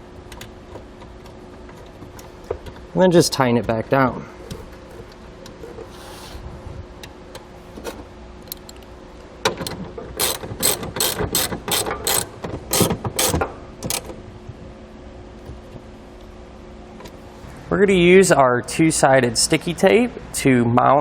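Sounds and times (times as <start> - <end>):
socket ratchet clicking: 9.6 - 14.1.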